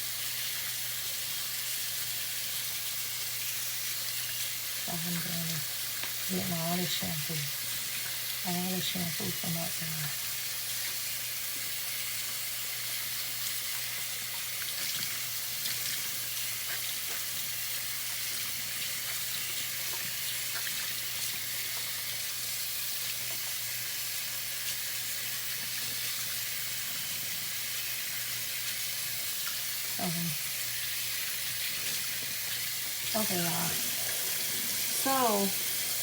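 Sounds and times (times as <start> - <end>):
tap water running: 0.0 - 36.0.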